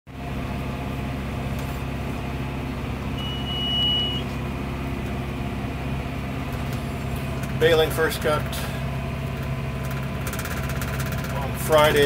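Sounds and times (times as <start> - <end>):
tractor engine running under load: 0.1 - 12.0
high electronic beep: 3.2 - 4.3.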